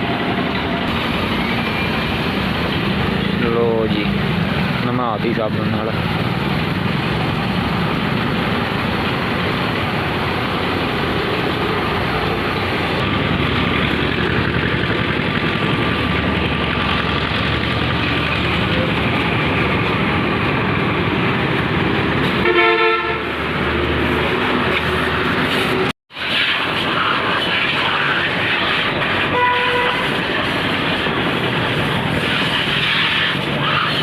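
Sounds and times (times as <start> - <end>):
road and engine noise: 0.0 - 34.0
vehicle horn honking: 22.4 - 23.3, 29.3 - 30.1.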